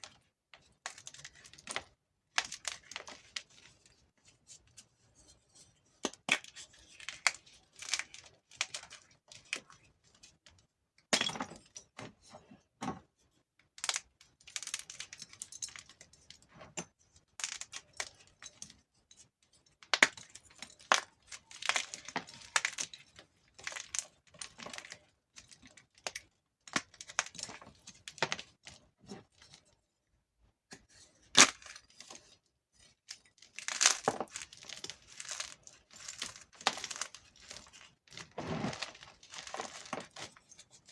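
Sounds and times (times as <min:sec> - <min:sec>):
chalk crackling and crunching: 0:33.6 - 0:40.4.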